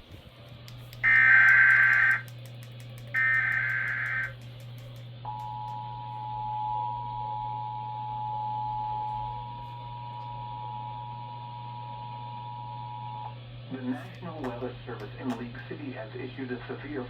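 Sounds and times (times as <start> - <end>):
low electrical hum: 0.0 - 17.0
two-tone alert signal: 1.0 - 2.2, 3.2 - 4.3
screechy digital data bursts: 1.0 - 2.3, 3.1 - 4.4.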